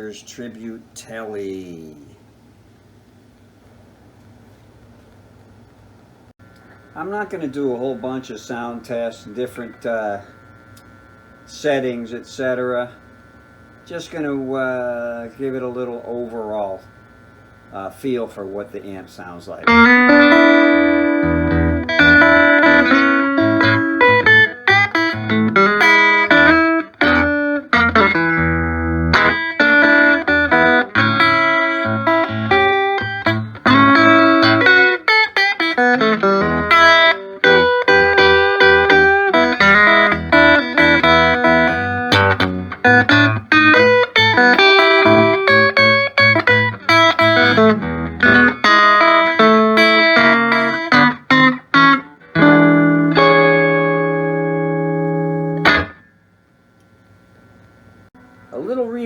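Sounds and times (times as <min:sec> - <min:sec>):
electric guitar notes and chords: 0:19.6 - 0:56.1.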